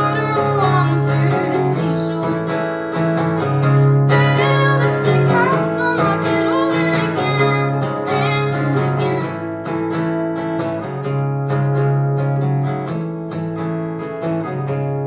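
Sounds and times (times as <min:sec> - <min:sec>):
woman singing: 0:00.0 - 0:09.8
strummed acoustic guitar: 0:00.0 - 0:15.0.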